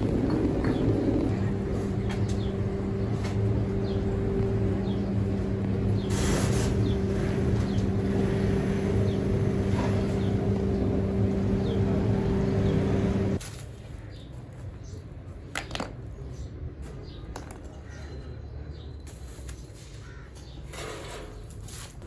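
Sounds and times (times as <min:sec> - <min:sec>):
machine hum with low drone: 0:00.0 - 0:13.4.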